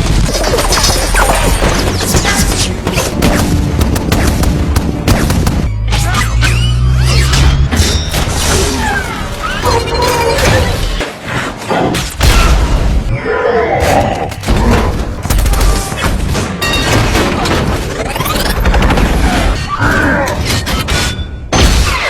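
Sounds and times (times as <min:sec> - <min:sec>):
action film music: 0:00.0 - 0:13.2.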